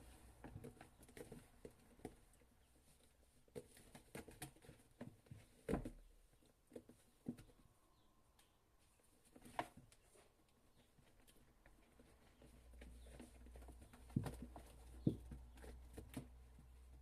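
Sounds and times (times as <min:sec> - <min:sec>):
kittens pattering taps: 0:00.2 - 0:07.7, 0:09.3 - 0:17.0.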